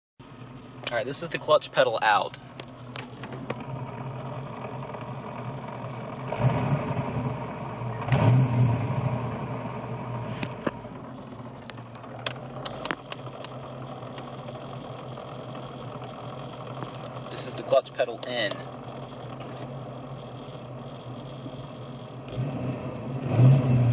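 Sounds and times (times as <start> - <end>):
car engine running: 0.2 - 23.9
person speaking: 0.8 - 2.5, 17.3 - 18.7
sharp clicks: 11.6 - 14.3.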